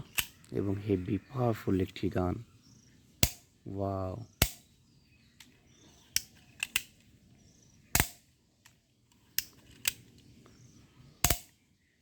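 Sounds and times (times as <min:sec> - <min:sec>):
toy gun pops: 0:08.0 - 0:08.2, 0:11.2 - 0:11.5.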